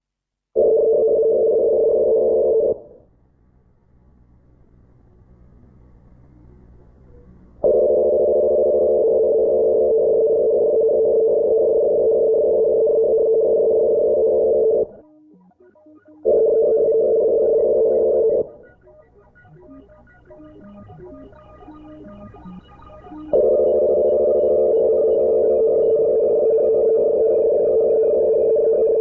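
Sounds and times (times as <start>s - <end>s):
steady alarm tone: 7.6s - 29.0s.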